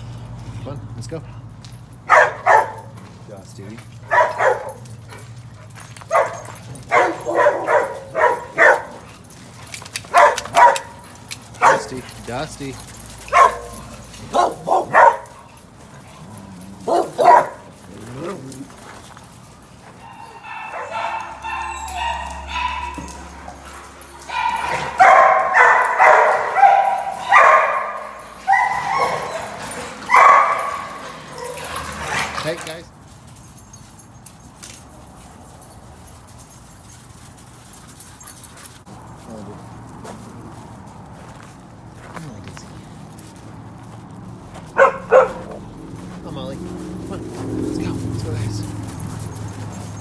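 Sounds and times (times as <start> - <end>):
dog barking: 2.0 - 3.0, 4.0 - 5.2, 6.1 - 9.1, 10.1 - 12.2, 13.2 - 15.6, 16.4 - 17.8, 20.0 - 23.7, 24.3 - 32.4, 44.7 - 45.8.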